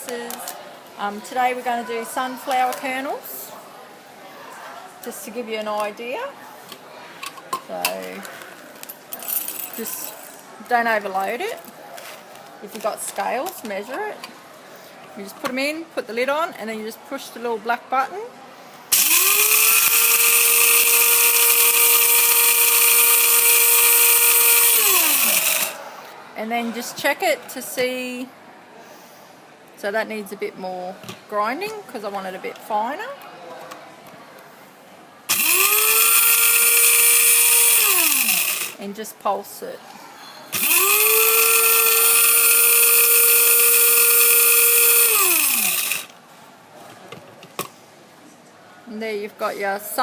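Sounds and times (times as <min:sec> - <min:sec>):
electric grinder whining: 0:18.9 - 0:25.8, 0:35.3 - 0:38.8, 0:40.6 - 0:46.1.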